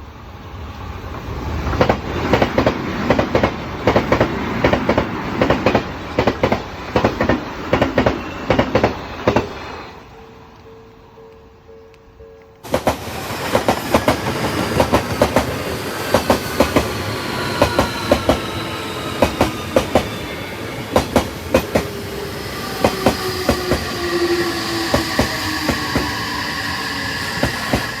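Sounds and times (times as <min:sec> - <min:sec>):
train rumble: 0:00.0 - 0:28.0
train wheels clicking over rail joints: 0:01.6 - 0:09.8, 0:12.4 - 0:28.0.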